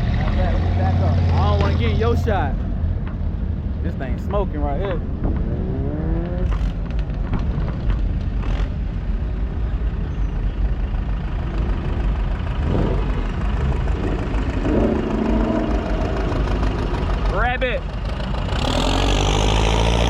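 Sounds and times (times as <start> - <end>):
car engine rumbling: 0.0 - 20.0
exhaust pops: 4.0 - 9.2, 12.4 - 18.5.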